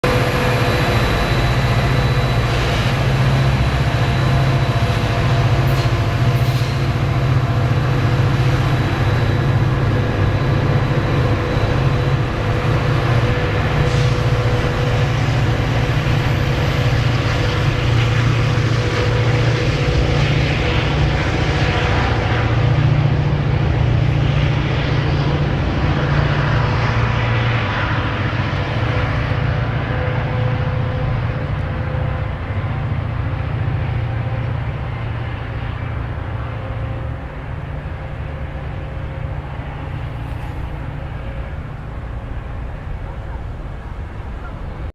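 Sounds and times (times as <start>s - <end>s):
vehicle engine rumble: 0.0s - 44.9s.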